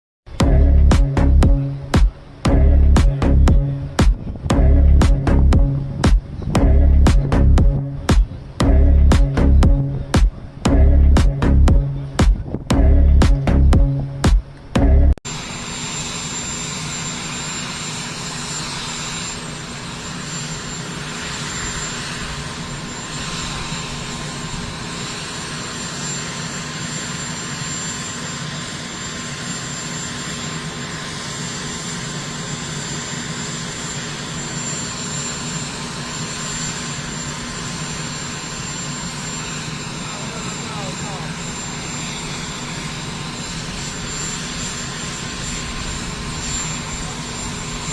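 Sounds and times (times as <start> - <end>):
high-pitched whine: 0.3 - 47.9
steady engine drone: 0.3 - 47.9.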